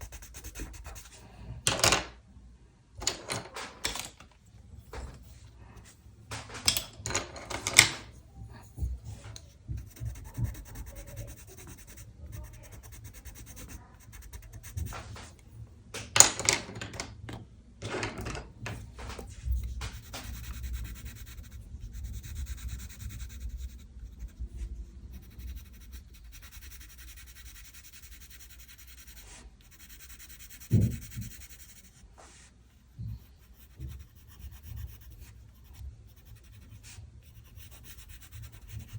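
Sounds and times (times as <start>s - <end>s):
pen scratching on paper: 0.0s - 1.2s, 8.7s - 15.4s, 18.7s - 38.9s.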